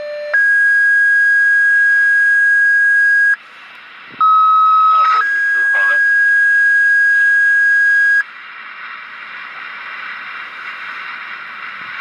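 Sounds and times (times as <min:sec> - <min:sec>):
two-tone radio page: 0:04.9 - 0:06.4
radio hiss: 0:04.9 - 0:12.0.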